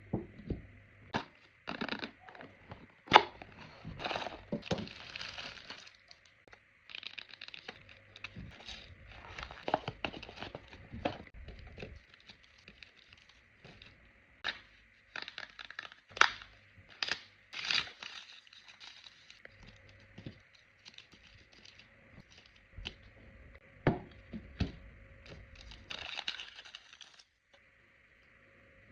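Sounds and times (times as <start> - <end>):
food wrappers crinkling and tearing: 3.5 - 23.1, 25.2 - 27.4
sharp cracks and snaps: 11.8 - 23.0.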